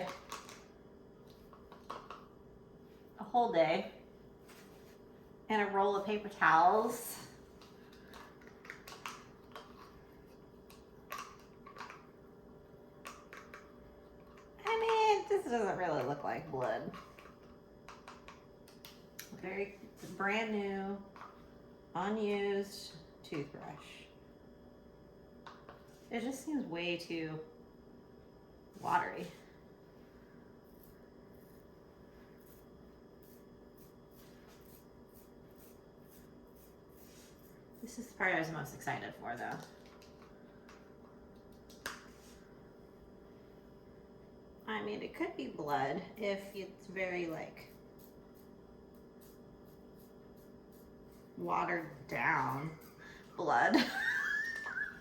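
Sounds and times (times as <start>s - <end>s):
faint steady hum: 0.0s - 55.0s.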